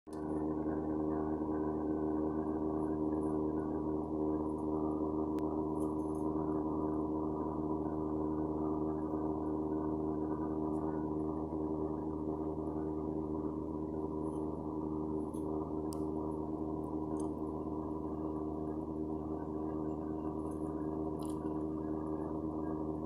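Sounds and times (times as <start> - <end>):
low mechanical drone: 0.1 - 23.0.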